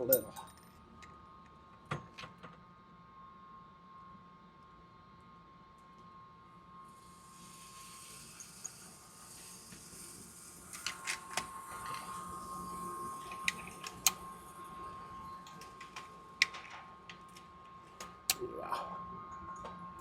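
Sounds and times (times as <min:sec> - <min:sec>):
electric target carrier whine: 0:05.2 - 0:20.0.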